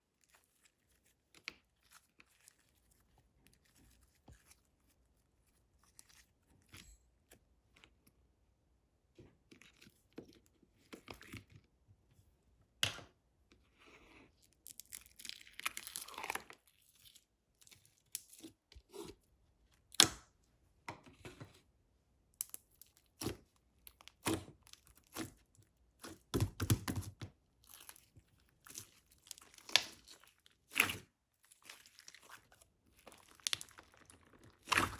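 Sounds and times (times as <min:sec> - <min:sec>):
slime squishing and popping: 0:28.7 - 0:34.9.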